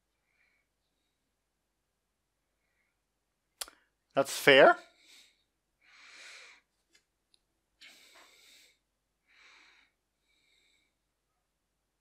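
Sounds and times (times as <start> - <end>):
faint breaths: 0.0 - 1.5, 2.5 - 4.0, 4.8 - 7.0, 7.8 - 11.3.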